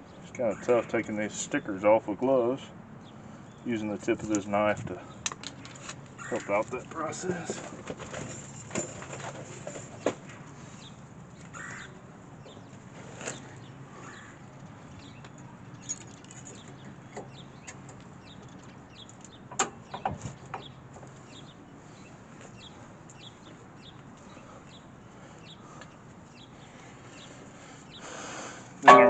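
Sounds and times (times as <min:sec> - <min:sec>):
brake pads and tools clicking: 0:04.1 - 0:10.4, 0:12.5 - 0:21.5.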